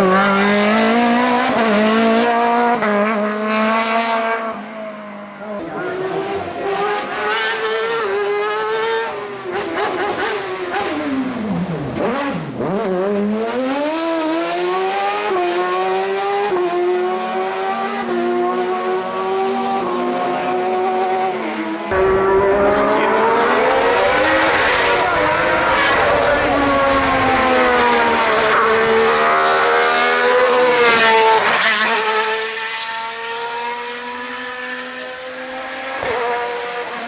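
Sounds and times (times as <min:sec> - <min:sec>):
race car revving: 0:00.0 - 0:21.3, 0:21.9 - 0:37.0
racing car engine revving: 0:21.9 - 0:37.0.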